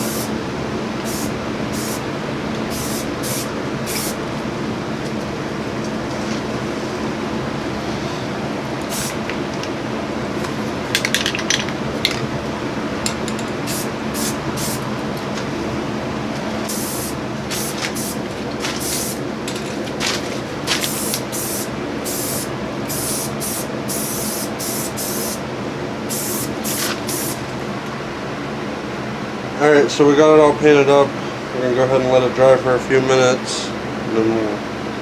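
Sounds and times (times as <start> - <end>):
spray paint hissing bursts: 0.0 - 0.4, 1.0 - 4.2, 8.9 - 9.2, 13.6 - 14.8, 16.7 - 19.2, 20.8 - 25.4, 26.1 - 27.4
steady low hum: 0.0 - 35.0.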